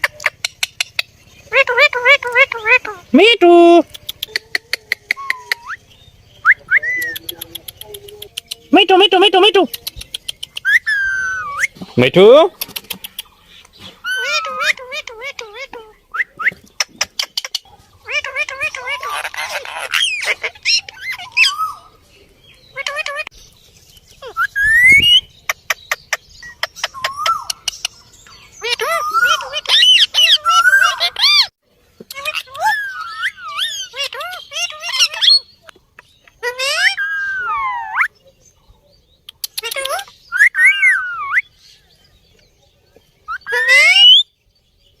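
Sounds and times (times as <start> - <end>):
parrot calling: 0.0 - 13.3, 13.9 - 22.0, 22.7 - 23.4, 24.2 - 31.5, 32.1 - 38.1, 39.3 - 41.5, 43.3 - 44.2
parrot whistled call: 5.1 - 5.8, 10.6 - 11.8, 24.2 - 25.3, 40.3 - 41.5, 43.3 - 44.2
parrot squawk: 10.6 - 11.7, 14.0 - 15.9, 17.4 - 21.8, 28.6 - 31.5, 32.1 - 35.5, 36.4 - 38.1, 39.6 - 41.4, 43.3 - 44.2.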